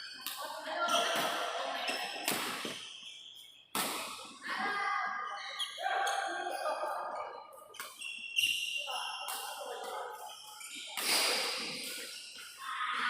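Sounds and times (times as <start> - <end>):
racket hitting shuttlecock: 0.2 - 2.9, 3.7 - 4.3.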